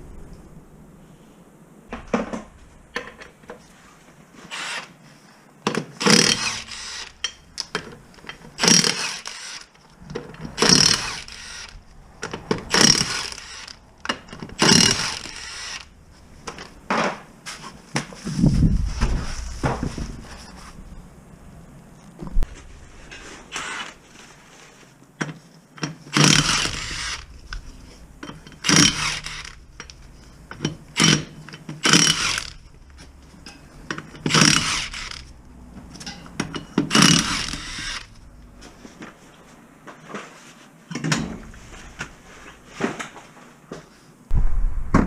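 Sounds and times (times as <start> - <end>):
short mechanical tool bursts: 6.0 - 7.4, 8.6 - 9.7, 10.6 - 11.8, 14.6 - 15.9, 26.1 - 27.3, 28.5 - 29.6, 31.0 - 32.6, 34.3 - 35.3, 36.9 - 38.1
heavy thud: 18.4 - 20.4, 44.3 - 45.0.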